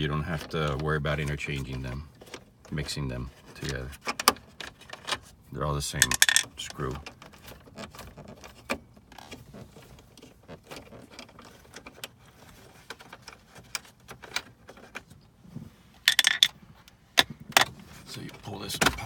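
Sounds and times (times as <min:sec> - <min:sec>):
screws and plastic trim rattling: 0:16.1 - 0:16.5.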